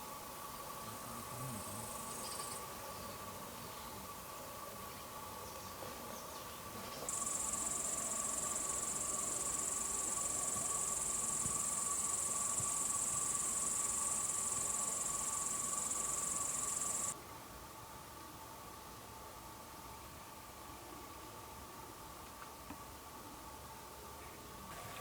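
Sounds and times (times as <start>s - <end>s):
cricket chirring: 1.2s - 3.1s, 7.1s - 17.2s.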